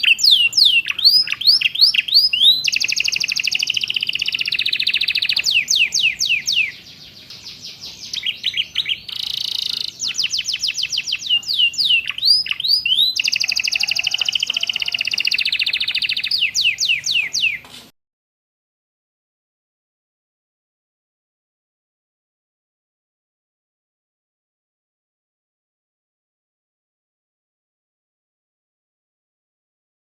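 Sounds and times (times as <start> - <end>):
canary singing trills and whistles: 0.0 - 17.6.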